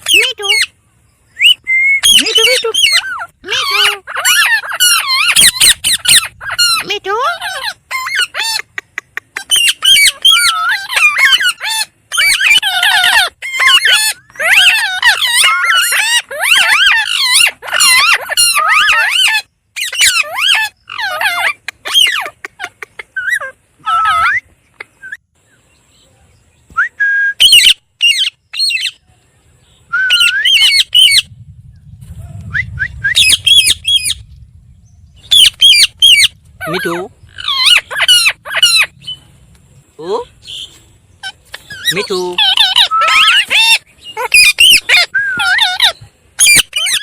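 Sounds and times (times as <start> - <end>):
parrot squawking and chattering: 0.0 - 0.8, 1.4 - 25.2, 27.4 - 29.0, 30.1 - 31.4, 35.2 - 39.2, 40.2 - 47.0
faint low rumble: 29.0 - 43.2.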